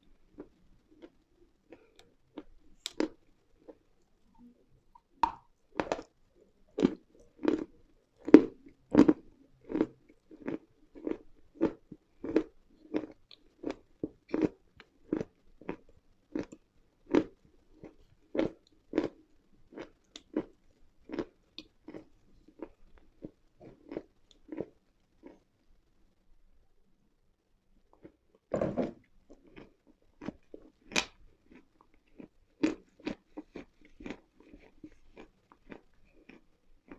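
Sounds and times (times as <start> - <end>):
crisp chewing crunches: 29.3 - 36.9.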